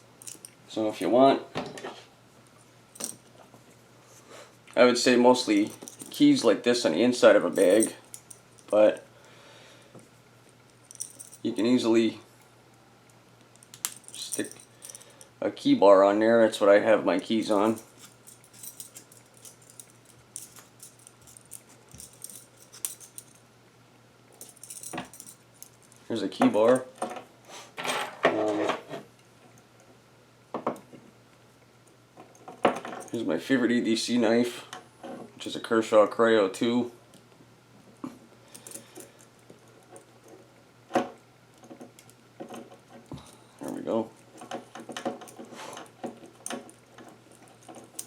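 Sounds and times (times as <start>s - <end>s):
keys jingling: 0.2s - 0.6s, 3.0s - 3.2s, 5.4s - 6.5s, 7.4s - 9.0s, 10.8s - 11.7s, 13.5s - 15.3s, 17.2s - 23.4s, 24.4s - 27.0s, 38.5s - 39.1s, 43.3s - 48.0s.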